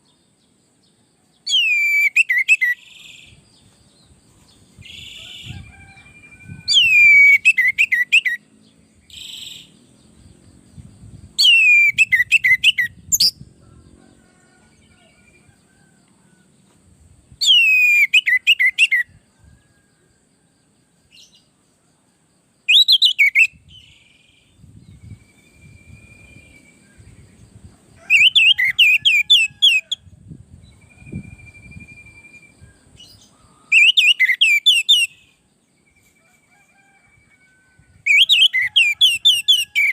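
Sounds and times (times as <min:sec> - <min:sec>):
bird singing whistled notes: 0:01.4 - 0:03.4, 0:04.8 - 0:08.5, 0:11.4 - 0:13.4, 0:17.4 - 0:19.1, 0:22.7 - 0:27.4, 0:28.0 - 0:30.0, 0:30.6 - 0:36.1, 0:38.1 - 0:39.9.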